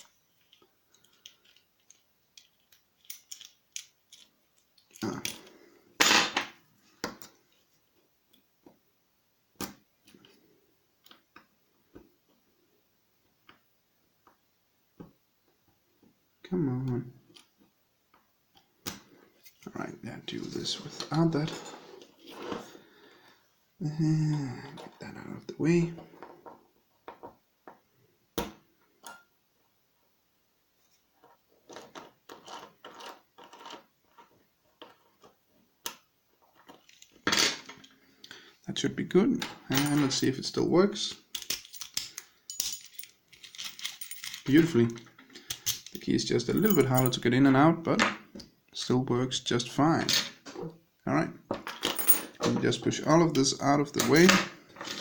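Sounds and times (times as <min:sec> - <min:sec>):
lock parts clicking: 0:00.4 - 0:05.4, 0:41.3 - 0:46.0.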